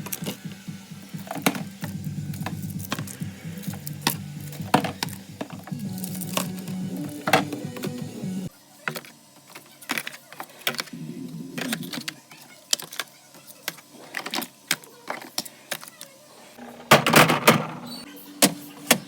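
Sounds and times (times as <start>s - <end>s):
food containers clicking and knocking: 1.1s - 8.1s, 16.6s - 19.0s.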